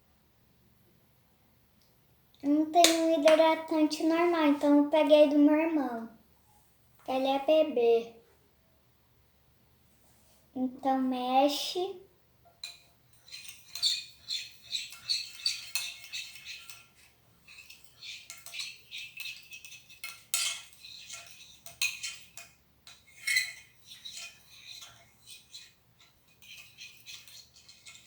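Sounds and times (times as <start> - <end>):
utensil scraping container: 12.6 - 28.0.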